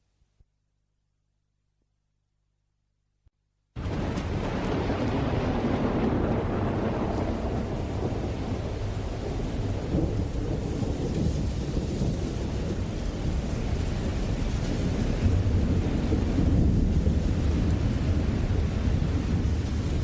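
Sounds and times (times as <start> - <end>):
low rumble of thunder: 3.8 - 20.0
steady rain: 3.8 - 20.0.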